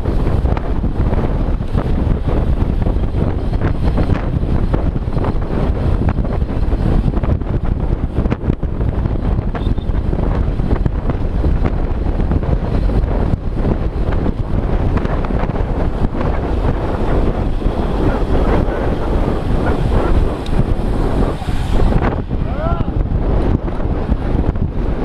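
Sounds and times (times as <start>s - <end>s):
wind buffeting microphone: 0.0s - 25.0s.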